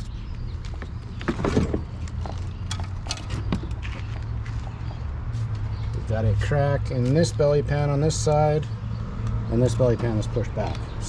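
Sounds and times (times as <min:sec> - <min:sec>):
handling knocks and clicks: 0:00.6 - 0:04.6.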